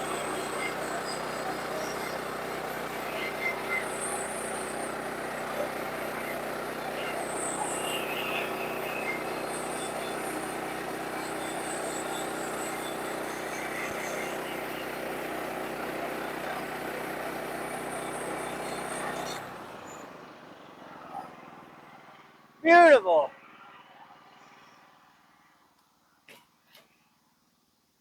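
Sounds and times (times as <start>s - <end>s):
sawmill engine: 0.0s - 19.8s.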